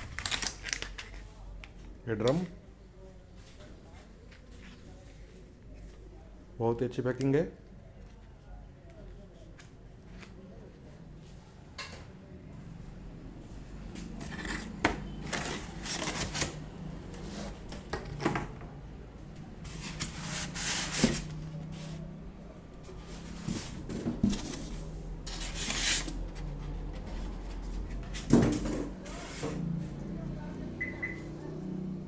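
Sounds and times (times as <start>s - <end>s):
packaging rustling and scraping: 0.0s - 1.5s, 13.9s - 18.5s, 19.6s - 22.1s, 22.8s - 29.7s.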